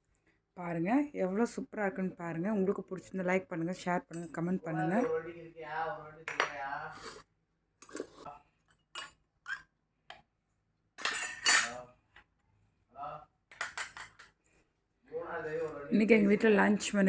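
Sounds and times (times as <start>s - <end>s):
tableware clinking: 11.0s - 11.8s, 13.6s - 14.3s.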